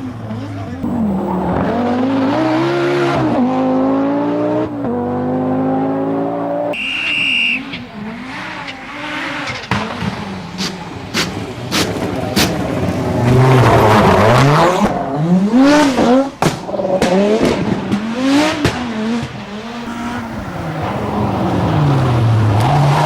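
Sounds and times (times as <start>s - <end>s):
rally car engines revving: 0.0s - 23.0s
high-pitched squeal: 6.8s - 7.9s, 19.6s - 23.0s.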